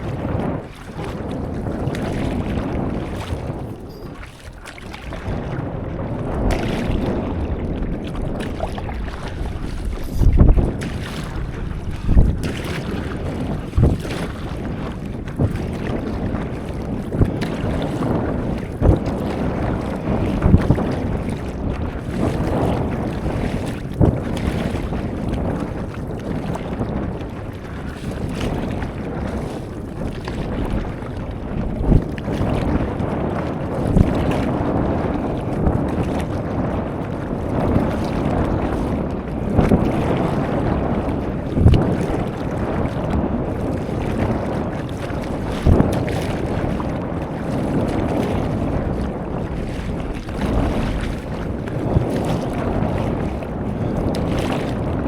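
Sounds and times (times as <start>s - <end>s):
moving sea water: 0.0s - 55.0s
water knocks and splashes: 0.0s - 55.0s
wind buffeting microphone: 0.0s - 55.0s.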